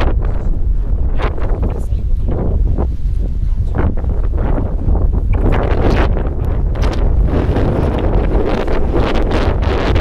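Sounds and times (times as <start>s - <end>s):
strong wind buffeting microphone: 0.0s - 10.0s.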